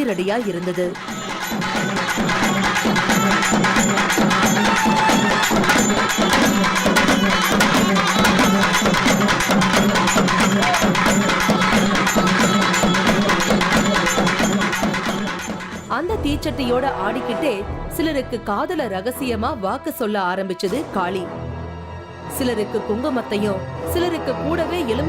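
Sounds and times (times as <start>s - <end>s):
drum ensemble playing: 0.1s - 19.6s.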